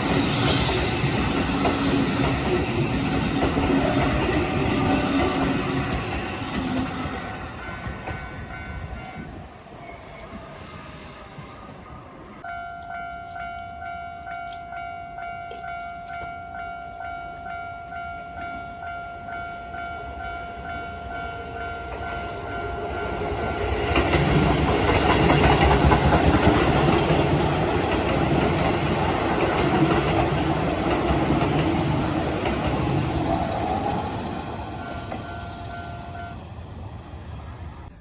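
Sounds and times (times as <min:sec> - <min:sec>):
level crossing warning bell: 0:12.4 - 0:36.5
train wheels clattering over rail joints: 0:21.9 - 0:34.1.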